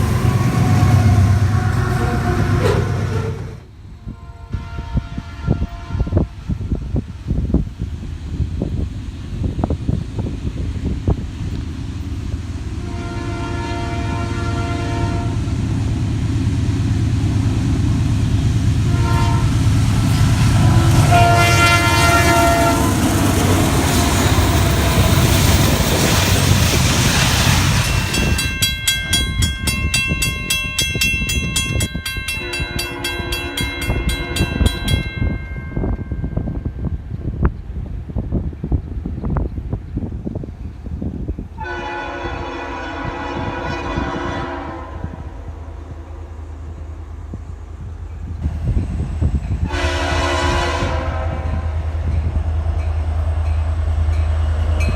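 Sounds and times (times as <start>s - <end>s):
locomotive air horn: 0.0s - 7.5s, 12.8s - 15.6s, 18.8s - 23.2s, 32.4s - 34.6s, 41.6s - 45.6s, 49.6s - 51.9s
train rumble and rail clatter: 0.0s - 54.9s.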